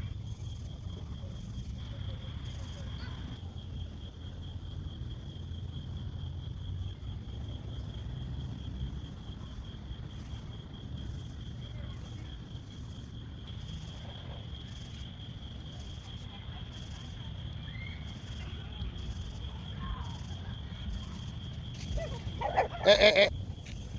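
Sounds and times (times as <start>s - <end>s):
crickets trilling: 0.0s - 23.9s.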